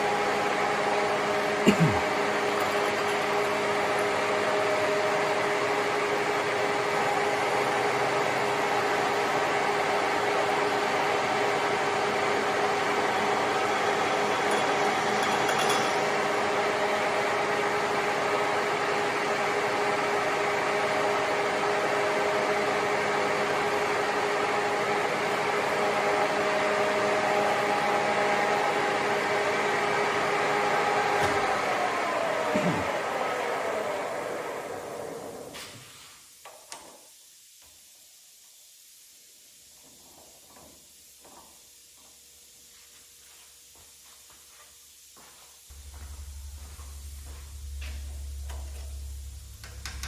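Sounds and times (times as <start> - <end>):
machine winding down: 0.3 - 23.5, 28.8 - 35.5, 45.7 - 50.0
machine motor humming: 6.9 - 19.9, 45.7 - 50.0.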